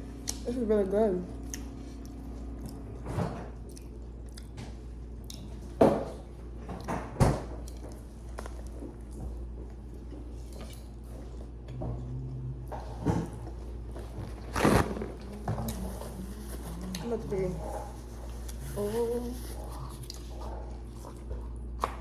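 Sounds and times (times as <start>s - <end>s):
person chewing and biting: 3.6s - 5.6s, 19.6s - 22.0s.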